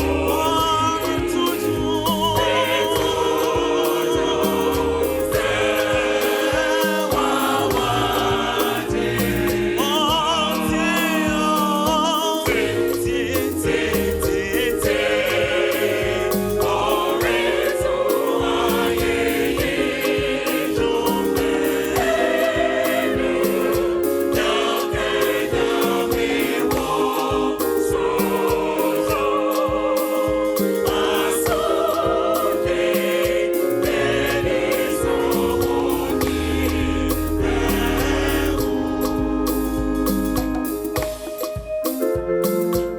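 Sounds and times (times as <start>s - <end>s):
gospel choir singing: 0.0s - 42.9s
instrumental backing with steady beat: 0.0s - 42.9s.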